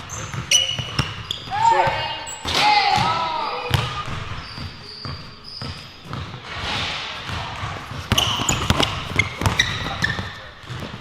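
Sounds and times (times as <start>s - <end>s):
basketball dribbling on gym floor: 0.0s - 2.0s, 7.2s - 11.0s
sneakers squeaking: 0.0s - 11.0s.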